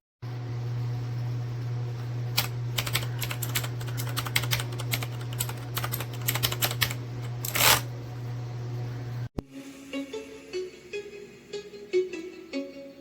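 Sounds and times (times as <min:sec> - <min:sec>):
steady low hum: 0:00.2 - 0:09.8
mechanical keyboard key clacks: 0:02.4 - 0:07.8.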